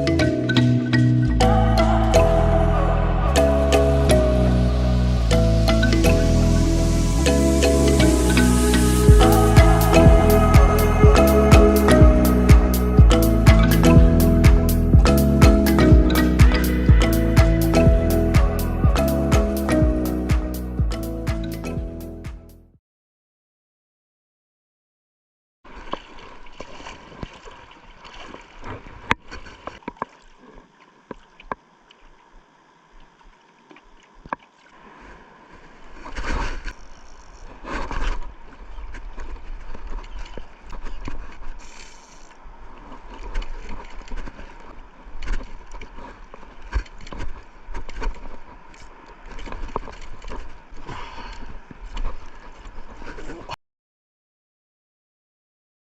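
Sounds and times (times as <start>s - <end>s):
wind rumble on microphone: 1.3s - 22.0s
water sloshing and splashing: 25.7s - 53.5s.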